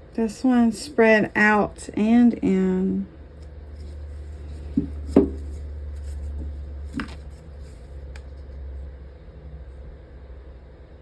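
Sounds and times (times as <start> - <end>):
steady low hum: 0.0 - 11.0
hard objects knocking: 4.7 - 5.5.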